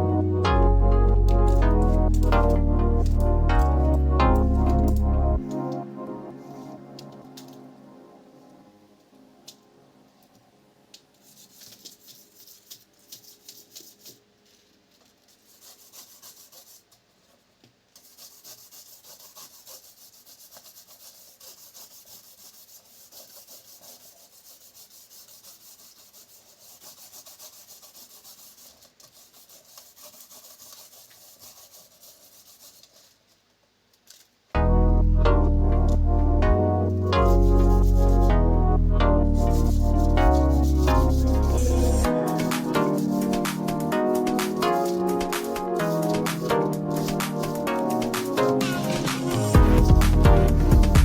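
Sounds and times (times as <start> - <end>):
rubbing on hard plastic: 1.1 - 5.0, 11.2 - 34.3, 37.1 - 38.3, 39.3 - 51.0.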